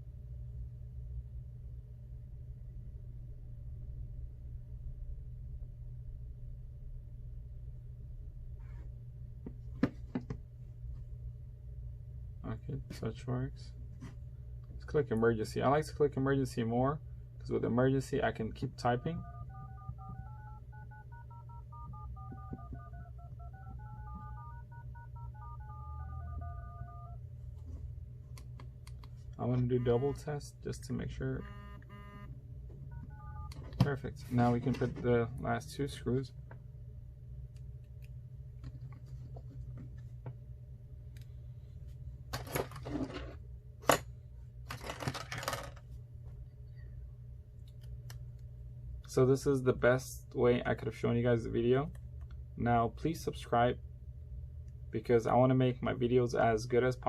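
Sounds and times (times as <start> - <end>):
low hum: 0.0 - 56.3
touch-tone keypad beeps: 19.0 - 27.2, 32.9 - 33.6.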